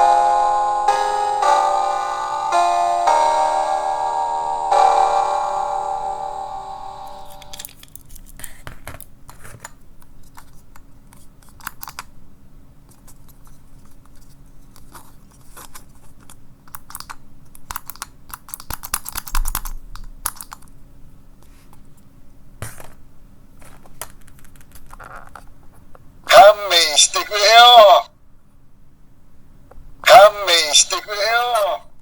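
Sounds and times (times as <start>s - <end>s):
plastic parts clicking and rattling: 7.5s - 12.1s, 12.9s - 20.7s.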